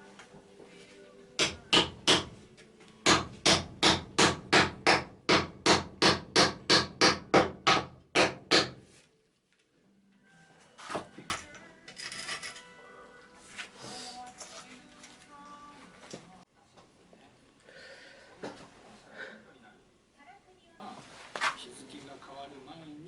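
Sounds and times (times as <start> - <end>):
hand tool striking wood: 1.4 - 2.4, 3.1 - 8.8.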